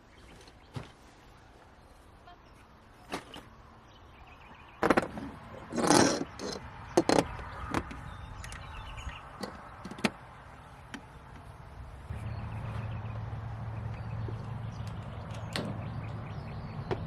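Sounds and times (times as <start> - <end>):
knocks and clatters: 4.8 - 8.6
rasping noise: 5.4 - 7.3.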